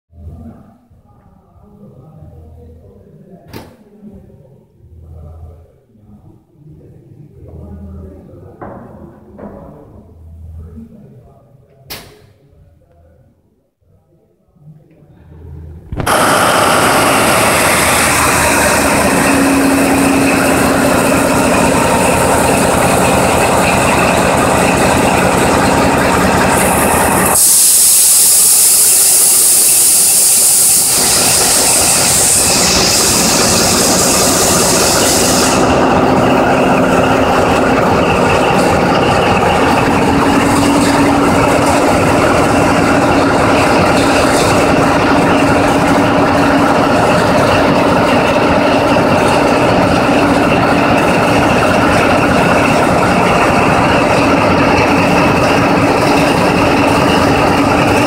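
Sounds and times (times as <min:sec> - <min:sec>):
diesel locomotive engine running: 0:15.3 - 0:58.0
loud hiss: 0:16.1 - 0:22.7, 0:25.7 - 0:41.3.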